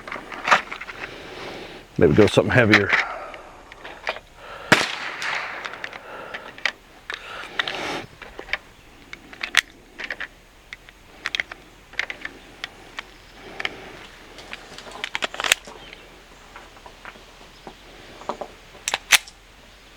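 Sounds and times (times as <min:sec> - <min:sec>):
cartridges clicking into magazine: 0:04.0 - 0:07.8, 0:08.4 - 0:13.7, 0:14.5 - 0:15.7, 0:18.8 - 0:19.4.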